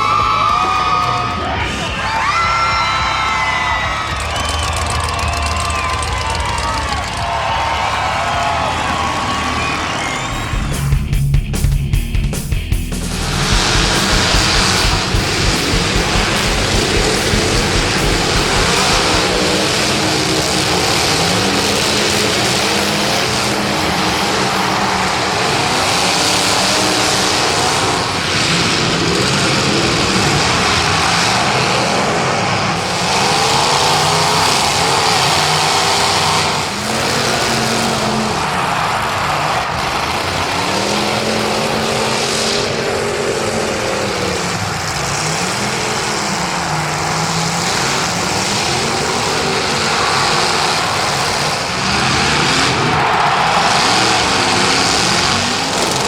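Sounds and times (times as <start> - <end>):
car engines revving: 0.0 - 56.0.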